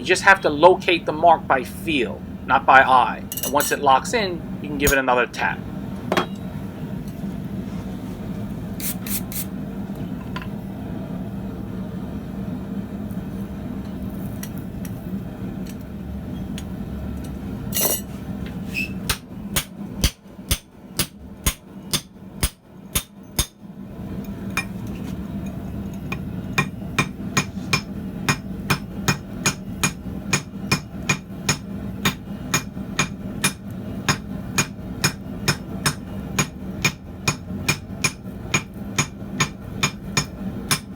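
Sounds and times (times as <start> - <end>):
steady low hum: 0.0 - 40.9
hammer blows on hot steel: 26.6 - 40.9.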